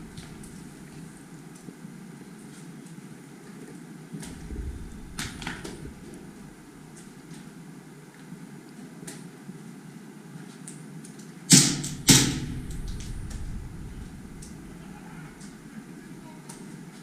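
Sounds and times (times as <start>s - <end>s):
faint background hiss: 0.0s - 8.7s, 11.5s - 17.0s
sharp knocks: 11.5s - 15.9s.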